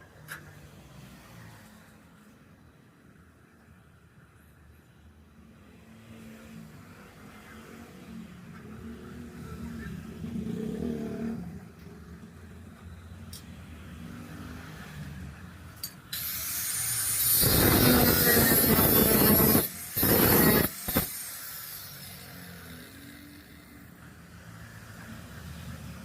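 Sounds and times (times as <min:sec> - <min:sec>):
power tool grinding sheet metal: 0:16.1 - 0:23.8.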